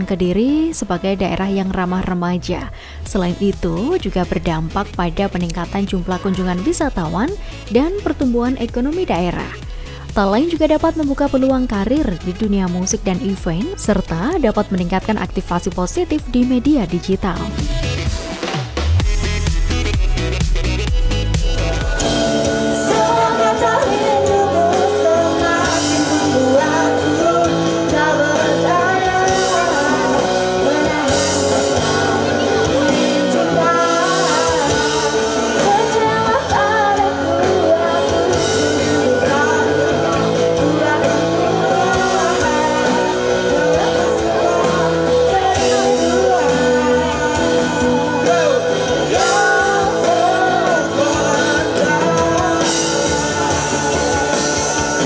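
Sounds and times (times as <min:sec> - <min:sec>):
band playing: 0:17.2 - 0:55.0
person singing: 0:21.8 - 0:55.0.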